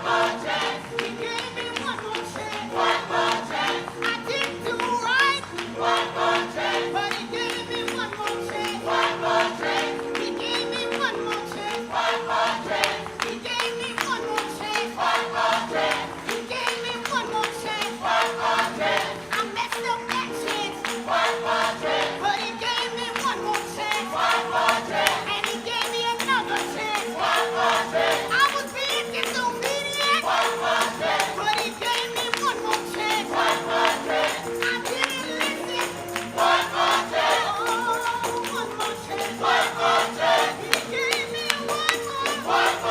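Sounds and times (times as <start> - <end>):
voices singing: 0.0 - 42.9
shaken percussion beat: 22.8 - 42.9.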